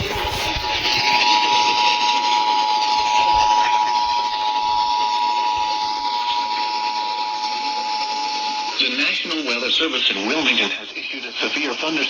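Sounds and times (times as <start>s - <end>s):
radio static hiss: 0.0s - 6.8s.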